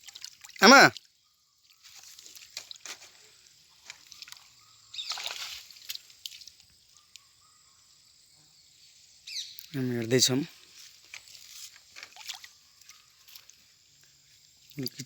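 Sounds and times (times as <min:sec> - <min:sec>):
shallow water sloshing: 0:00.0 - 0:06.8, 0:10.6 - 0:14.0
small water splashes: 0:00.0 - 0:07.4, 0:10.5 - 0:15.0.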